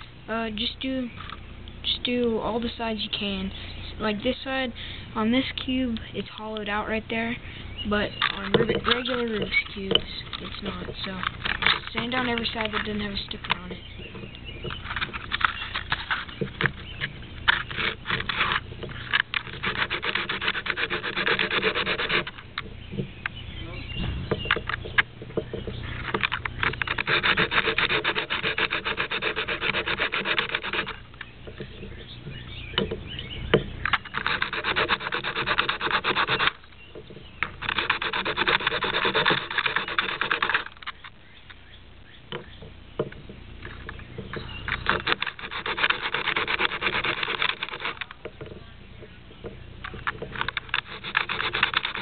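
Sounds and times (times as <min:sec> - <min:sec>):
sandpaper scraping plastic: 0:08.0 - 0:13.8, 0:14.6 - 0:22.6, 0:26.0 - 0:31.1, 0:33.8 - 0:36.7, 0:37.4 - 0:41.1, 0:44.6 - 0:48.2, 0:49.8 - 0:52.0.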